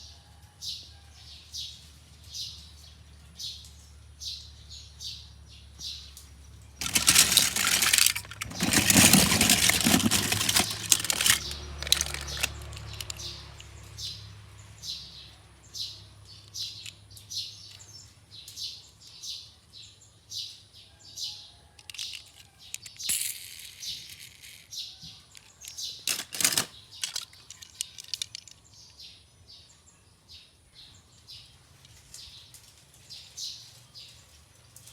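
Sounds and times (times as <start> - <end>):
bird chirping: 2.2 - 20.6.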